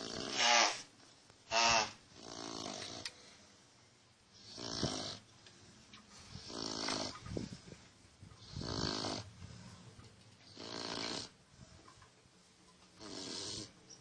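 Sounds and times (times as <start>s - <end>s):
loud raspy snoring: 0.0s - 0.8s, 1.5s - 3.1s, 4.4s - 5.2s, 6.4s - 7.2s, 8.4s - 9.3s, 10.5s - 11.4s, 13.0s - 13.8s
quiet breathing: 2.4s - 10.6s, 11.2s - 14.0s.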